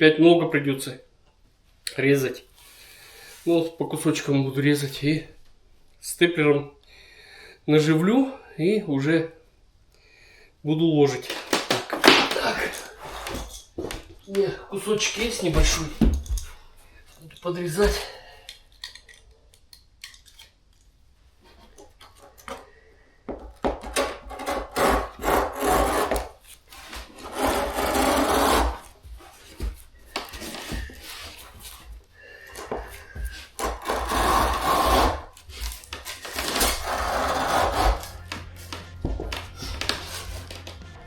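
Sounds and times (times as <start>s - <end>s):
rug being cut by hand: 24.0s - 31.8s, 32.5s - 40.9s.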